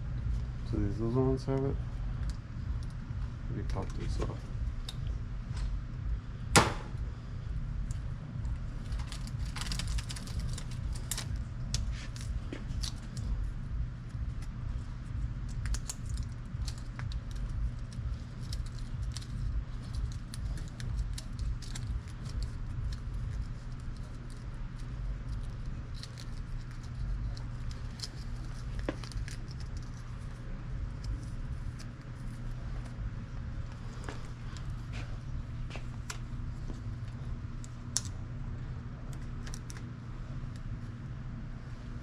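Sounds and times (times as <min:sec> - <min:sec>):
steady low hum: 0:00.0 - 0:42.0
sharp snap: 0:06.6 - 0:06.9
parts clicking and rattling: 0:08.8 - 0:13.3.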